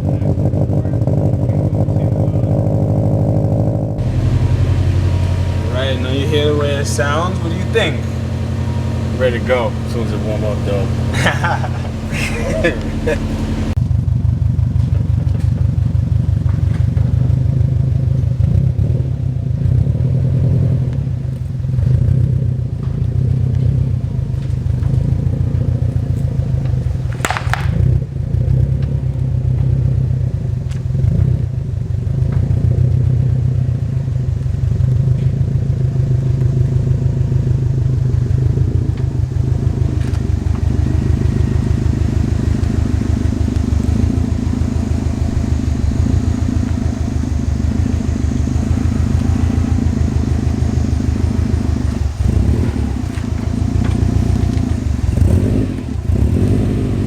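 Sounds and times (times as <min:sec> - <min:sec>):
car engine idling: 0:00.0 - 0:57.0.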